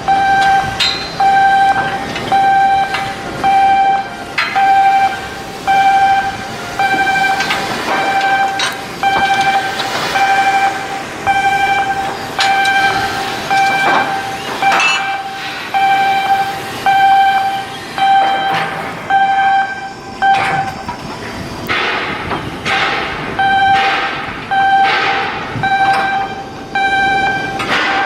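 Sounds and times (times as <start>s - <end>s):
warning alarm beeping: 0.0s - 21.0s, 23.3s - 28.0s
metallic knocks: 0.4s - 3.2s, 6.8s - 15.4s.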